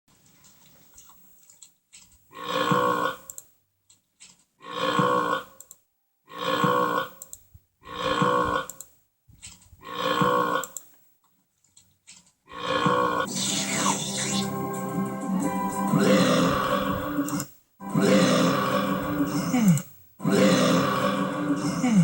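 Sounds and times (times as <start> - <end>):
long burp: 6.3 - 7.1, 7.8 - 8.7, 15.9 - 22.0.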